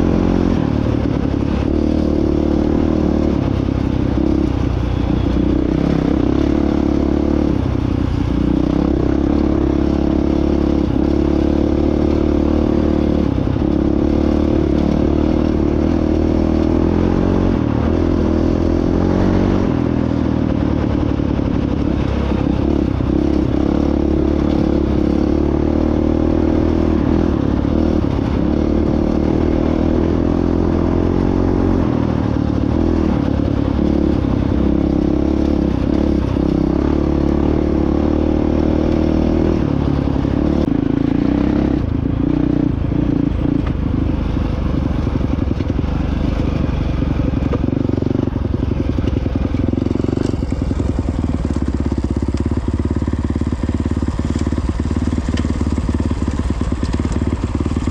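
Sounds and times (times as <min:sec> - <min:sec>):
dirt bike engine running: 0:00.0 - 0:57.9
clatter and rattles: 0:43.4 - 0:57.9.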